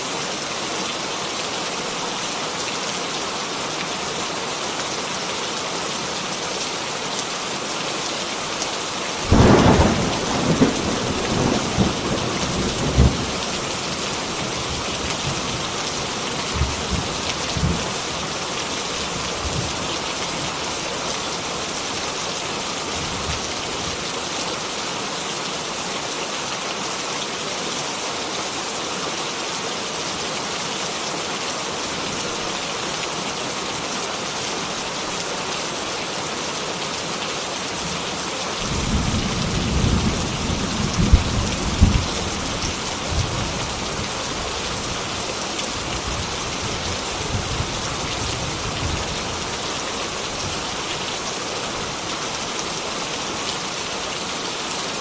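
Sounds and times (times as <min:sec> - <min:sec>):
heavy rain pouring: 0:00.0 - 0:55.0
thunder rumbling and cracking: 0:09.3 - 0:13.6, 0:38.7 - 0:44.2.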